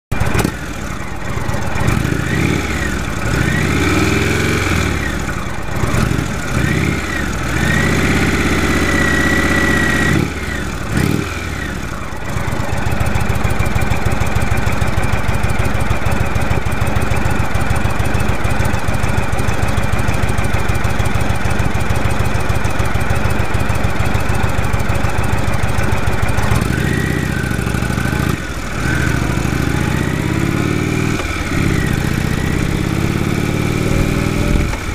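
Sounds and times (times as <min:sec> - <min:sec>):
motorcycle engine revving: 0:00.2 - 0:34.9
high engine whine: 0:17.4 - 0:34.9.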